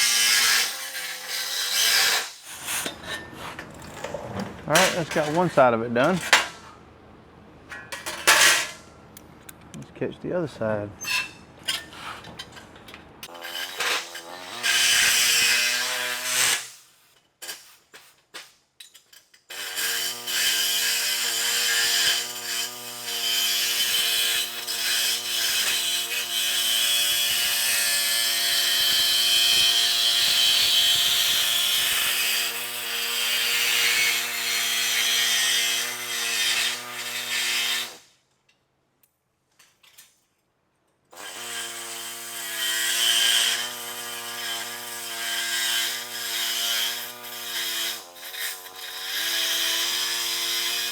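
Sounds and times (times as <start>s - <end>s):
body saw cutting sheet steel: 0.0s - 6.8s, 13.2s - 18.1s, 19.5s - 38.1s, 41.1s - 50.9s.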